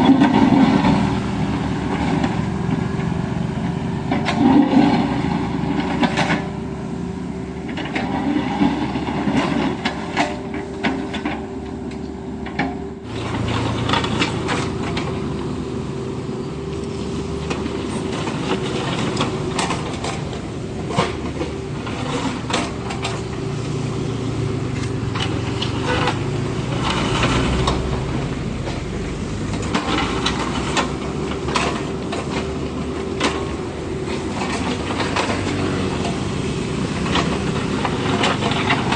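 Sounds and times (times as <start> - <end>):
diesel engine under load: 0.0 - 38.9
excavator bucket clanking on rock: 24.8 - 38.9.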